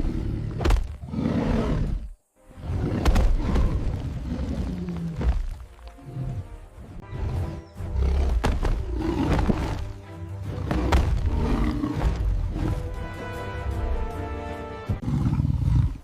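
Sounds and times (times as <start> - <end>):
large animal roaring and growling: 0.0 - 5.2, 10.6 - 12.8, 15.0 - 16.0
background music: 1.1 - 16.0.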